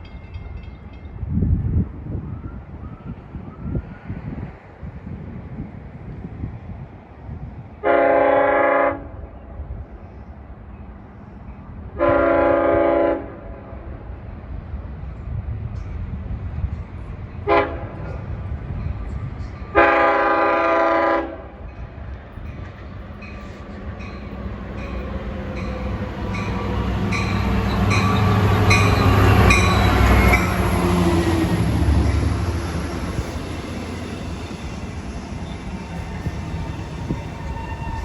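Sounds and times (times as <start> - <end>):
train rumbling past: 0.0 - 38.0
train air horn blasts: 7.8 - 9.3, 12.0 - 13.5, 17.5 - 18.0, 19.8 - 21.5.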